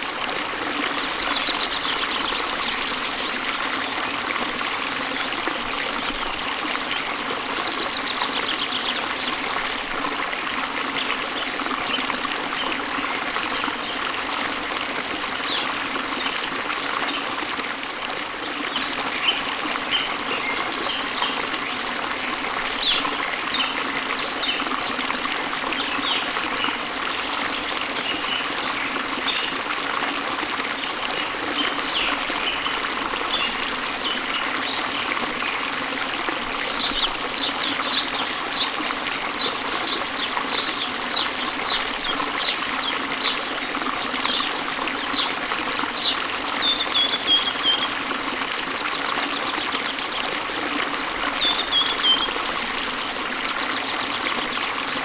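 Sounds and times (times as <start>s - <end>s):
waterfall rushing: 0.0s - 6.9s.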